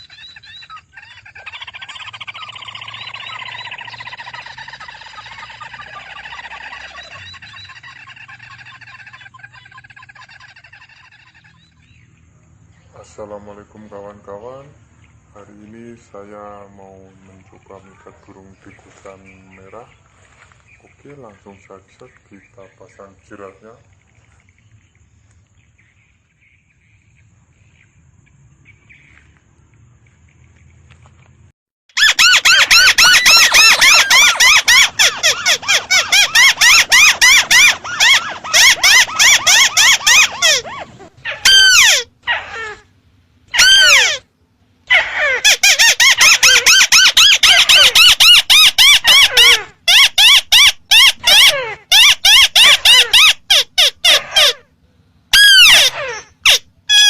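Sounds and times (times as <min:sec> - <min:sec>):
bird falling calls: 0:00.0 - 0:12.0, 0:31.9 - 0:42.8.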